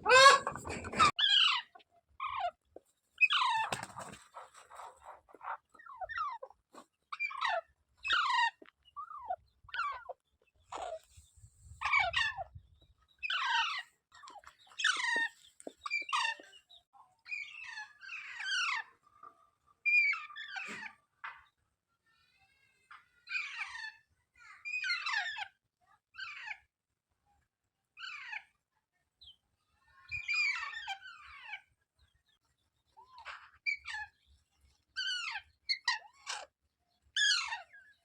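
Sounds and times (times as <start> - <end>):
parrot screeching: 0.0 - 1.6.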